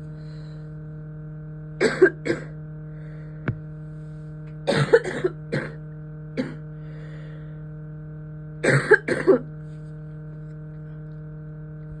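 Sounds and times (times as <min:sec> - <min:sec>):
steady low hum: 0:00.0 - 0:12.0
person coughing harshly: 0:01.8 - 0:02.6, 0:04.7 - 0:05.8, 0:06.4 - 0:06.7, 0:08.6 - 0:09.5.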